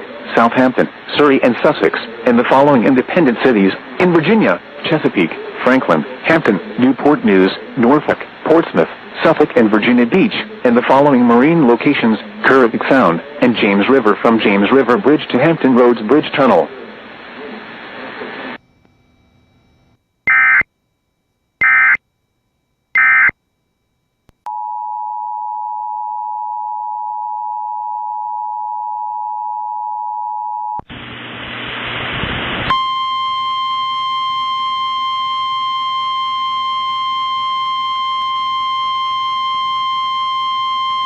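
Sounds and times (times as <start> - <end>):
loud static: 0.0 - 19.0, 30.8 - 33.0
digital data bursts: 20.3 - 20.6, 21.6 - 22.0
two-tone attention signal: 20.3 - 20.6, 21.6 - 22.0, 23.0 - 23.3.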